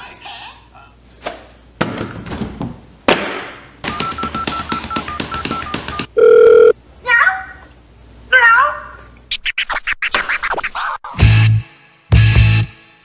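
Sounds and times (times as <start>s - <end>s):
long steady beep: 4.0s - 6.7s.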